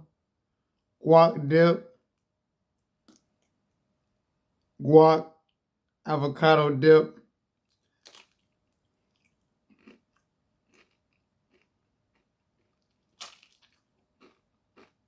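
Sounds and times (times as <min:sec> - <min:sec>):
tortilla chip crunching: 0:07.6 - 0:15.0.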